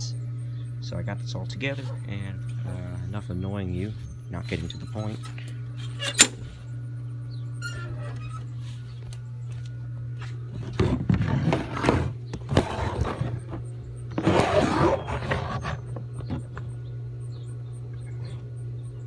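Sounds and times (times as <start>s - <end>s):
steady low hum: 0.0s - 19.0s
rubbing and scraping: 1.7s - 6.7s, 7.6s - 9.2s, 10.2s - 16.6s.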